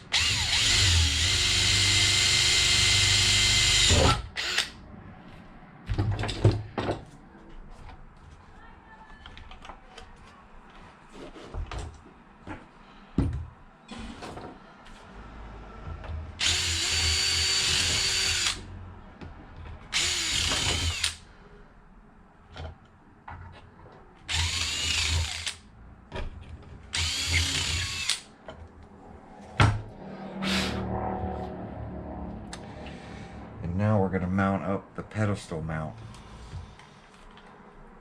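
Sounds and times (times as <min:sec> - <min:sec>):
power drill drilling: 0:00.1 - 0:04.7, 0:16.4 - 0:18.6, 0:19.9 - 0:21.2, 0:24.3 - 0:25.6, 0:26.9 - 0:28.2.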